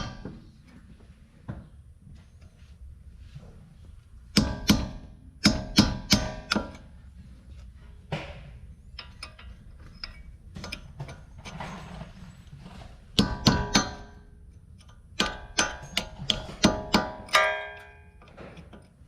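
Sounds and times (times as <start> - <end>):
metal scraping: 11.1 - 13.1
metal tool striking metal: 15.2 - 18.2.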